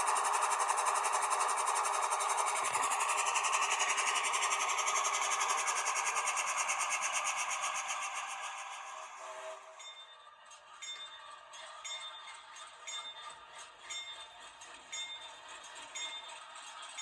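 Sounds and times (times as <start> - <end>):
locomotive bell ringing: 9.7 - 17.0.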